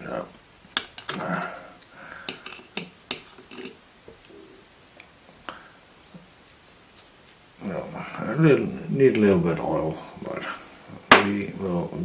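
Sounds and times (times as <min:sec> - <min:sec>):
light metal scraping: 0:02.3 - 0:04.7.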